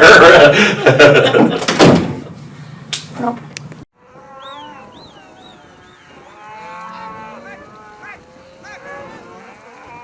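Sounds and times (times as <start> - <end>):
cattle mooing: 4.0 - 10.0.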